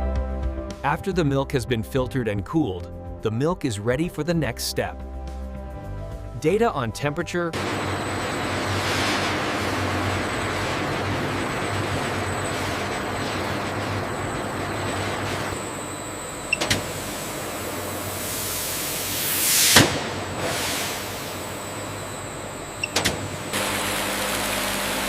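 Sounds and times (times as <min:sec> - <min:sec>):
machinery hum: 0:07.6 - 0:25.0.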